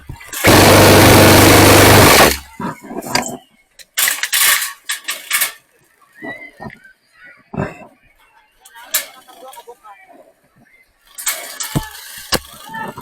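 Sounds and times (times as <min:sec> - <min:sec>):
loud rushing noise with low hum: 0:00.4 - 0:02.4.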